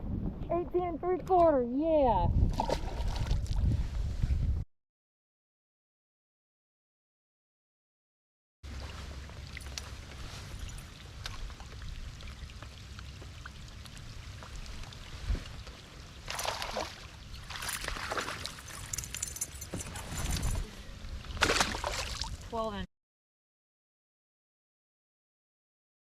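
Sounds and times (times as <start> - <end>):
wind rumble on microphone: 0.0 - 4.6, 8.7 - 22.9
water splashing and pouring: 8.7 - 20.6, 21.3 - 22.6.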